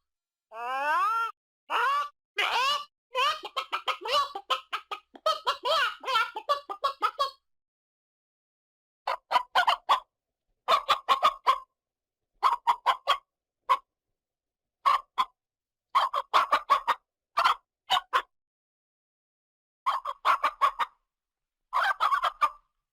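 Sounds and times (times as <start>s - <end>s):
chicken clucking: 1.9s - 7.4s, 9.1s - 10.1s, 10.7s - 11.7s, 12.4s - 13.9s, 14.8s - 15.4s, 16.0s - 18.3s, 19.9s - 21.0s, 21.8s - 22.6s.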